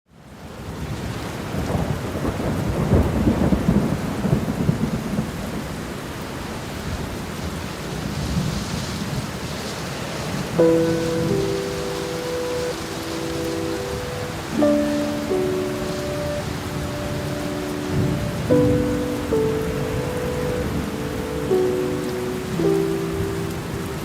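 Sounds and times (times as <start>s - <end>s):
steady rain: 0.1s - 24.0s
low rumble of thunder: 1.5s - 5.8s, 14.4s - 24.0s
held musical chord: 10.6s - 24.0s.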